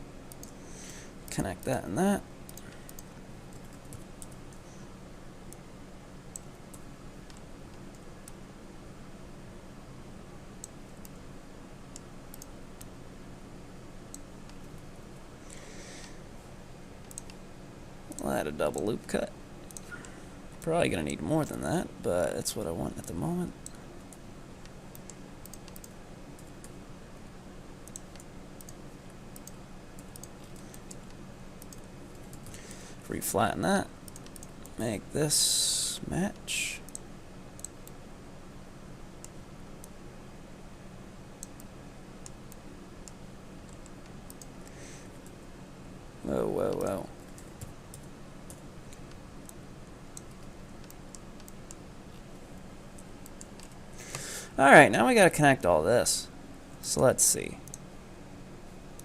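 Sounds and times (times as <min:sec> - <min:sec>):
steady low hum: 0:00.0 - 0:59.0
computer mouse and keyboard clicks: 0:00.3 - 0:00.6, 0:17.0 - 0:17.4, 0:27.8 - 0:32.6, 0:34.1 - 0:34.8
keyboard and mouse clicking: 0:00.3 - 0:00.6, 0:11.9 - 0:12.9, 0:17.0 - 0:17.4, 0:23.6 - 0:26.8, 0:27.8 - 0:32.6, 0:34.1 - 0:34.8, 0:37.6 - 0:38.0, 0:41.4 - 0:44.5.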